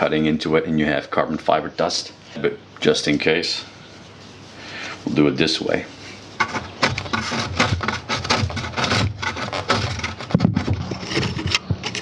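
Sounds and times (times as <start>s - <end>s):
knife scraping carbon fibre: 5.9s - 12.0s.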